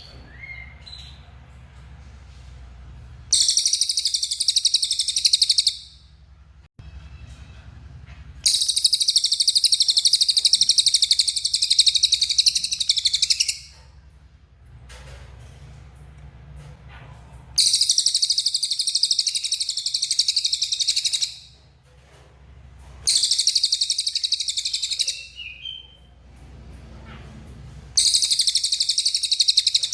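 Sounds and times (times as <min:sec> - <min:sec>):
songbird high-pitched trills: 0:03.3 - 0:05.9, 0:08.5 - 0:13.7, 0:17.6 - 0:21.5, 0:23.1 - 0:26.0, 0:28.0 - 0:29.9.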